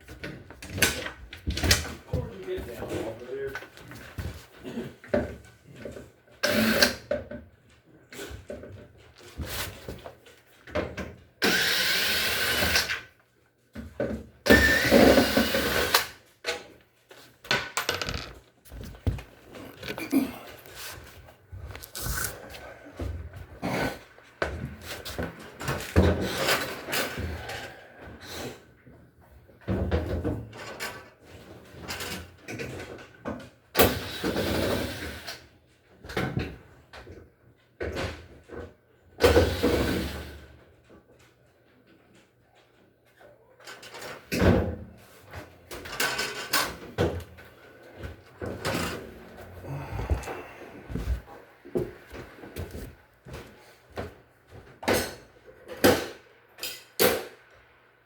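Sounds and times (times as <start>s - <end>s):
metal parts scraping: 17.8s - 18.8s.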